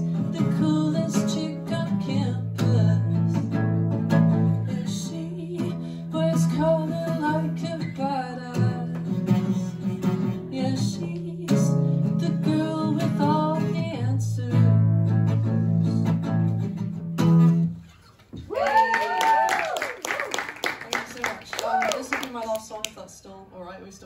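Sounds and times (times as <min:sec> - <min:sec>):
person singing wordlessly: 0:00.0 - 0:03.5, 0:04.7 - 0:14.7.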